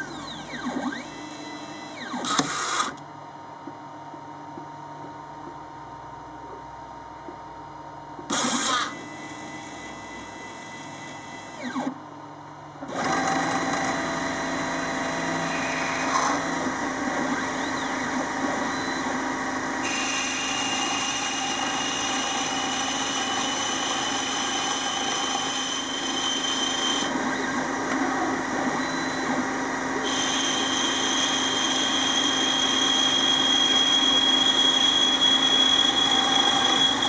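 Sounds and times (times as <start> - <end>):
high-pitched machine whine: 0.0 - 3.0, 8.2 - 12.0, 13.0 - 37.0
lathe machine noise: 12.9 - 37.0.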